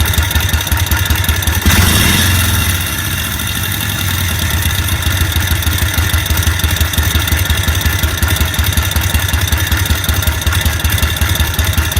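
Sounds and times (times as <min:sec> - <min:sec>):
engine idling with pulsing beat: 0:00.0 - 0:11.9.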